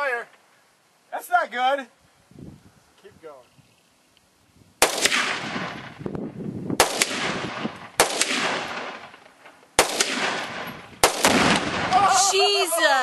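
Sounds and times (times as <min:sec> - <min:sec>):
rifle shots with echo: 0:04.8 - 0:06.0, 0:06.8 - 0:12.2.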